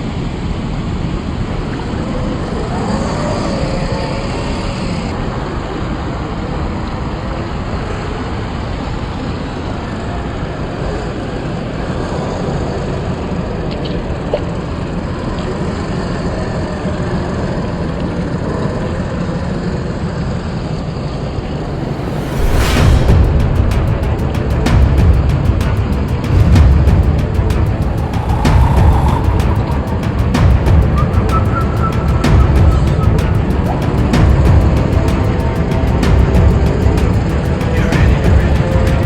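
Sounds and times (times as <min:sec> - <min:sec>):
continuous rushing noise: 0:20.6 - 0:39.0
simulated engine rumble: 0:21.4 - 0:39.0.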